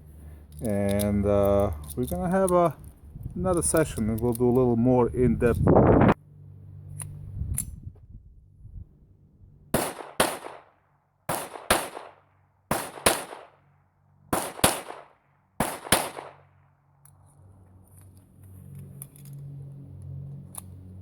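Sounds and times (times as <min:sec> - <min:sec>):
pistol shots: 0:09.7 - 0:10.7, 0:11.3 - 0:13.6, 0:14.3 - 0:16.6.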